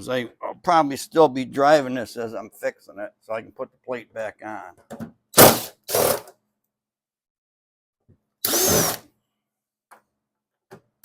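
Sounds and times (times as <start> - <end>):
cordless drill whining: 5.4 - 6.3, 8.4 - 9.1.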